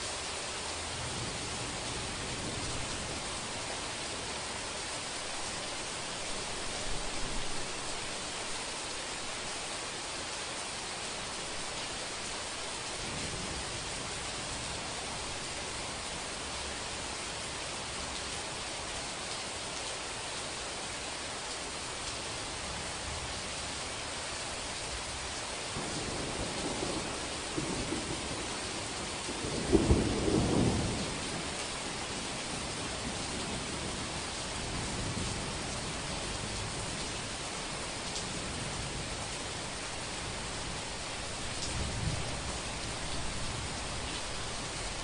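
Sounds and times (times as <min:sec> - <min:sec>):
heavy rain hiss: 0:00.0 - 0:45.0
distant thunder rumbling: 0:25.8 - 0:45.0.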